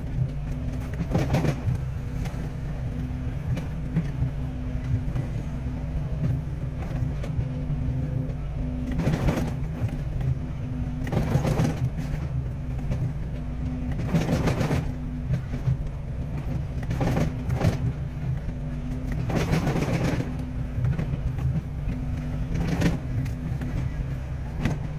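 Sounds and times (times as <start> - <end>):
excavator diesel engine running: 0.0 - 24.9.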